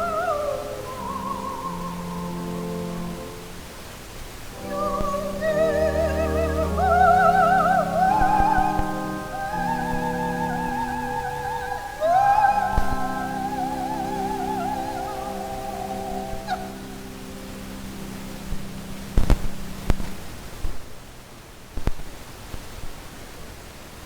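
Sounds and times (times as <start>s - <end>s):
soprano singing: 0.0s - 19.2s
sustained keyboard chords: 0.0s - 20.4s.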